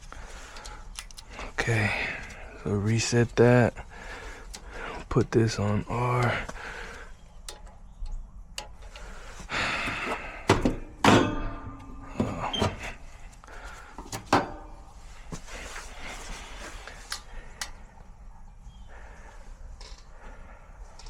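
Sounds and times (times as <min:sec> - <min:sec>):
equipment knocks and clunks: 0:09.8 - 0:13.0, 0:14.0 - 0:14.8.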